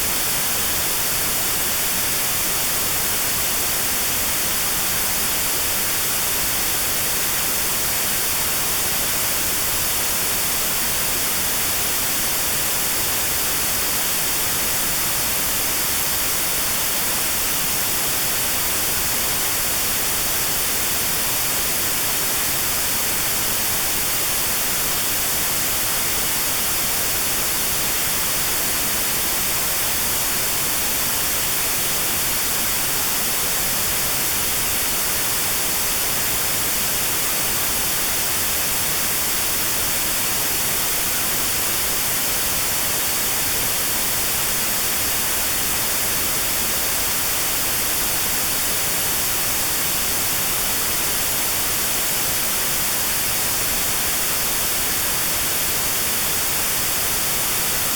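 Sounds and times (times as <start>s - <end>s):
steady notched white noise hiss: 0.0s - 57.9s.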